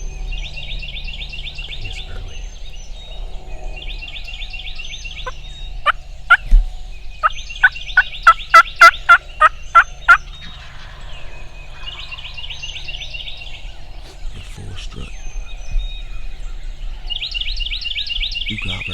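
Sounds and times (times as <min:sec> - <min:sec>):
songbirds chirping: 0:00.0 - 0:18.9
turkey yelps: 0:05.1 - 0:06.5, 0:07.6 - 0:11.1.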